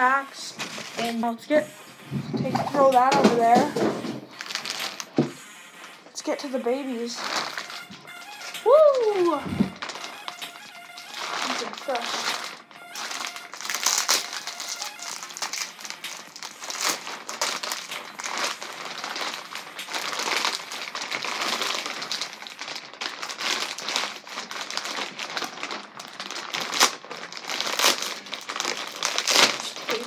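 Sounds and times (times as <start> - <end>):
packing material crinkling: 0.0 - 30.0.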